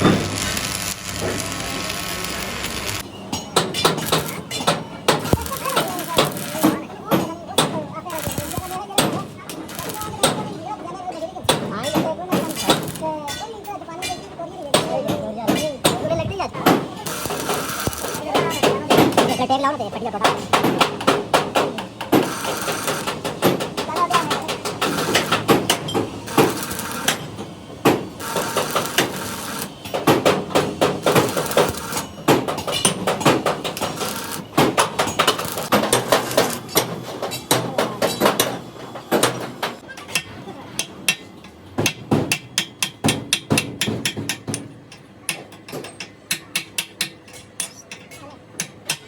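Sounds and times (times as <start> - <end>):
hammer on metal: 27.8 - 49.0.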